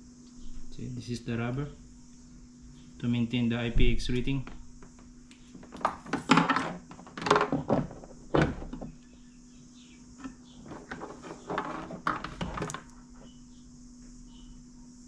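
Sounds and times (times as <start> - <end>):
rubbing knocks: 10.2 - 12.9
sharp knocks and scrapes: 10.2 - 12.9.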